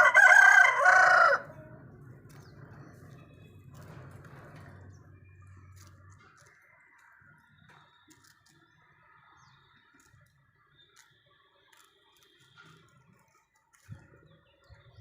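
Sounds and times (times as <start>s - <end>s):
small clicks and scratches: 2.2s - 14.9s
faint high bird chirps: 4.8s - 15.0s.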